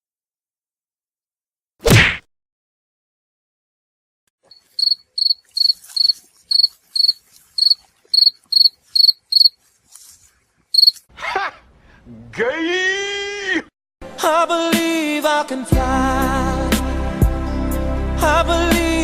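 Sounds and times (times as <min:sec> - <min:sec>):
cricket chirping: 0:04.5 - 0:09.6, 0:10.7 - 0:11.0.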